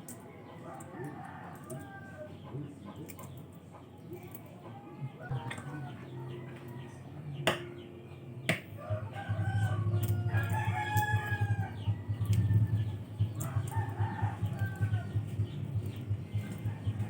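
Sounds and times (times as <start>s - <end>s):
rooster crowing: 0.6s - 2.3s, 8.8s - 15.4s
steady low rumble: 8.9s - 17.0s.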